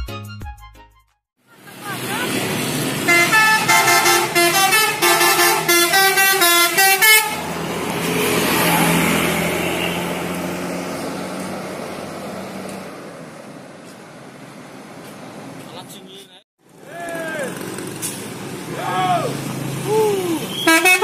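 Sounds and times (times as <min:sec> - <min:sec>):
vehicle passing: 0:01.5 - 0:20.7
multi-tone musical bus horn: 0:03.0 - 0:07.5, 0:09.5 - 0:10.2, 0:20.6 - 0:21.0.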